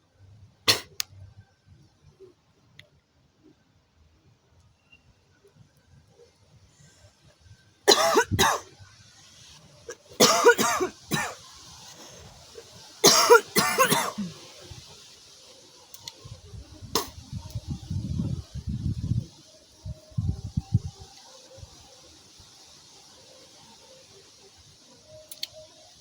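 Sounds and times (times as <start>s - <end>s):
woman coughing harshly: 7.9s - 8.7s, 10.2s - 11.4s, 13.0s - 14.4s.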